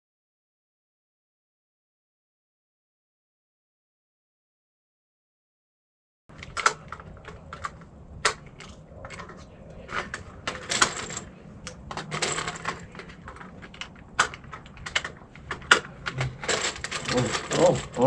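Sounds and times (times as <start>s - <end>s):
small metallic clicks and clinks: 6.3s - 18.0s.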